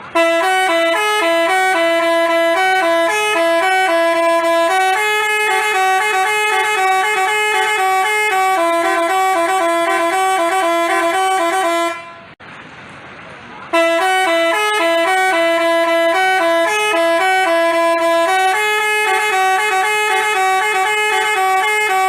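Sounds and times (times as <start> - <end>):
musical air horn tune: 0.0 - 12.4, 13.7 - 22.0.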